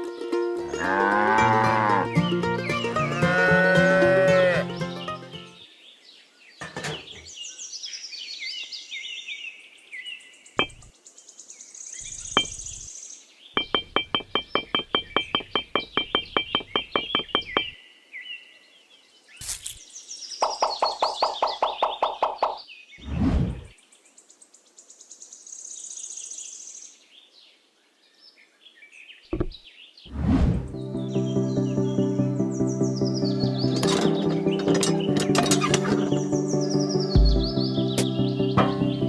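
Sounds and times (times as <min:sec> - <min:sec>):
cow mooing: 0:00.8 - 0:02.1, 0:03.0 - 0:04.7
fast clicking chirps: 0:13.6 - 0:17.8, 0:20.4 - 0:22.6.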